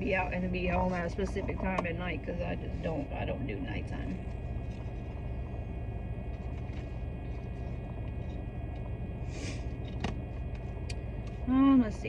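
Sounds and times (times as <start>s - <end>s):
air blowing from vents: 0.0s - 12.0s
car engine idling: 0.0s - 12.0s
brief hiss: 9.3s - 9.7s.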